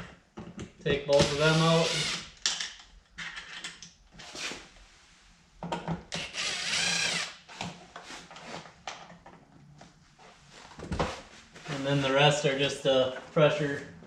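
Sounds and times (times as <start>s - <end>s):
power drill running: 1.2s - 2.3s, 6.2s - 7.4s.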